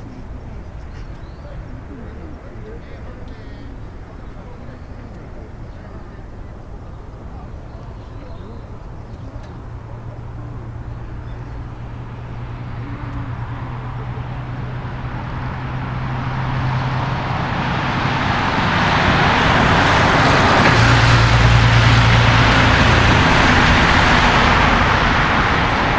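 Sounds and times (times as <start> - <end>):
jet engines roaring: 8.7 - 25.9.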